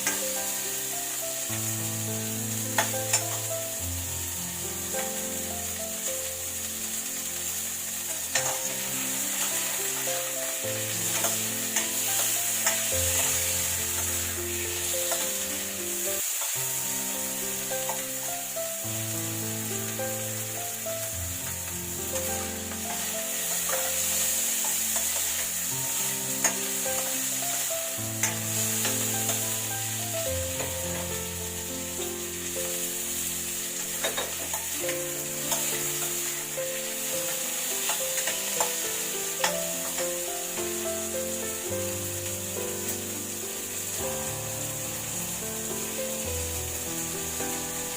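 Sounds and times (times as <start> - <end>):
background music with chords: 0.0 - 47.9
food sizzling in a frying pan: 0.0 - 47.9.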